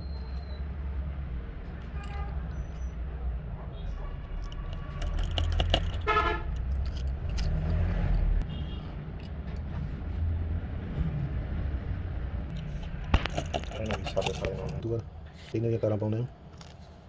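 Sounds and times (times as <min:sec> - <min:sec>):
road traffic rumble: 0:00.0 - 0:17.0
car horn toot: 0:06.0 - 0:06.5.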